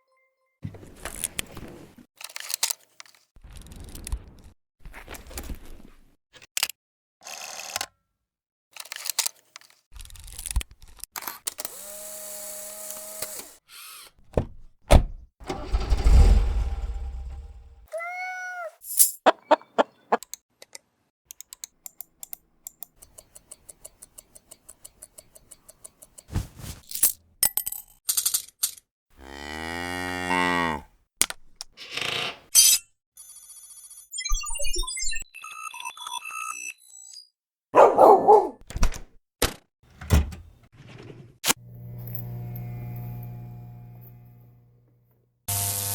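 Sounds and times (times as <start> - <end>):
loud low whoosh: 15.8 - 17.8
evenly spaced ticks: 21.4 - 26.3.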